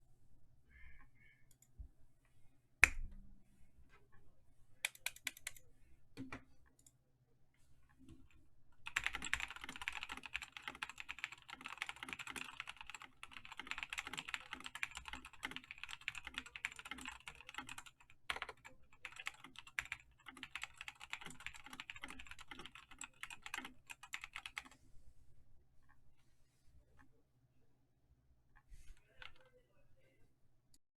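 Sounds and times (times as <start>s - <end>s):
typing on mechanical keyboard: 4.9s - 5.6s, 8.8s - 24.8s.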